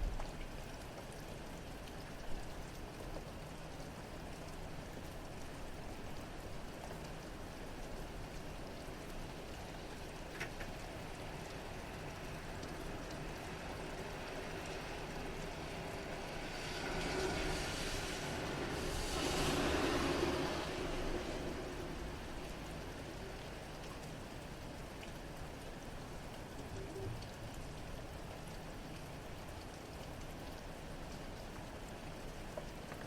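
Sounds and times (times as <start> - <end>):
steady rain falling: 0.0 - 33.0
drip-like tick: 0.1 - 9.6, 10.2 - 14.8, 23.7 - 25.7, 26.3 - 33.0
car tyres hissing on wet road: 13.2 - 23.3.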